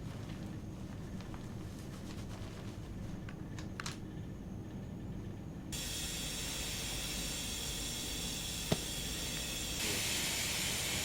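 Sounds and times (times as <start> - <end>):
steady hiss: 5.8 - 11.0.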